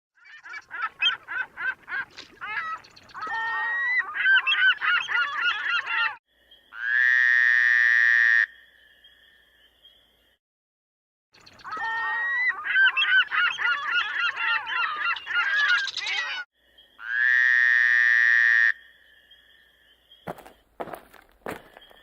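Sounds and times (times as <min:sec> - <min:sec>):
flock of birds calling: 0:00.2 - 0:06.2, 0:11.5 - 0:17.4.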